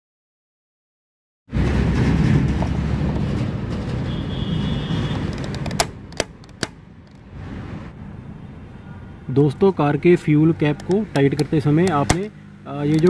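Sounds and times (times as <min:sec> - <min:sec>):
ratchet clicks: 0:12.8 - 0:13.0.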